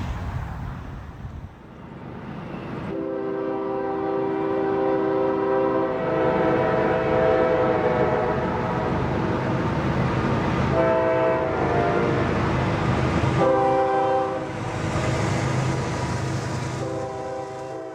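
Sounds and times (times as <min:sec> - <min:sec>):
passing train rumble: 0:00.0 - 0:17.9
locomotive air horn blasts: 0:02.9 - 0:09.0, 0:10.7 - 0:12.3, 0:13.4 - 0:14.6, 0:16.8 - 0:17.9.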